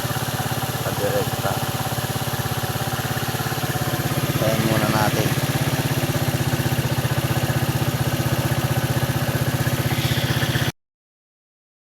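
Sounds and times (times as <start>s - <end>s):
motorcycle engine idling: 0.0s - 10.7s.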